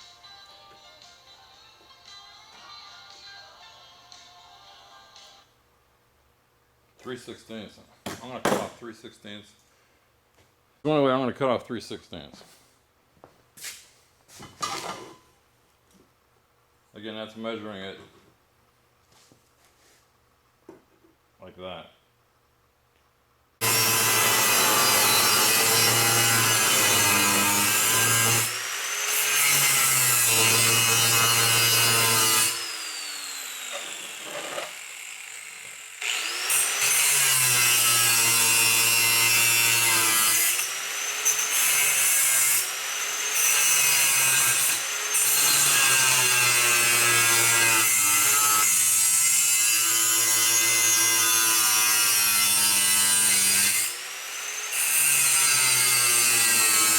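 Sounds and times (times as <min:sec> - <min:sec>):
electric cutting tool cutting metal: 0:23.6 - 0:56.9.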